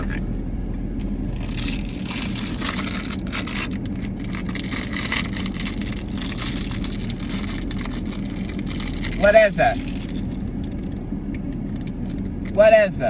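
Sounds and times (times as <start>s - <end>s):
steady low rumble: 0.0s - 13.0s
plastic wrapper crinkling: 1.4s - 11.0s.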